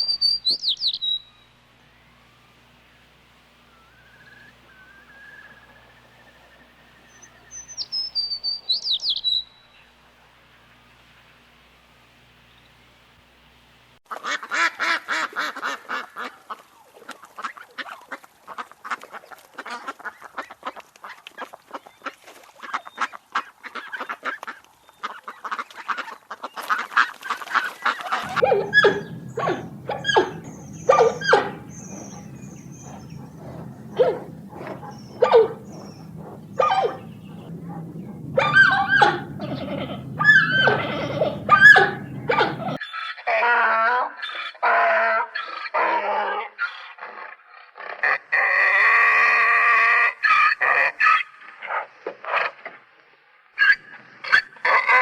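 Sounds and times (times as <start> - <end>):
steady low hum: 0.0 - 14.0, 28.2 - 42.8
animal chattering calls: 28.2 - 42.8.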